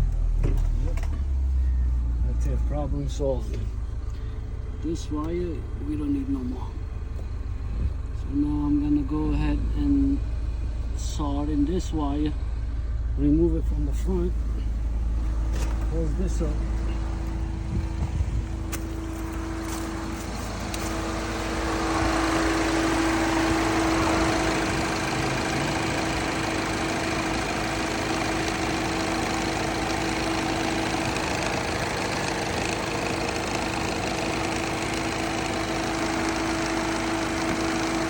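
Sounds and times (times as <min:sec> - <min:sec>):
car engine idling: 0:00.0 - 0:38.0
cooling fan rushing: 0:13.9 - 0:38.0.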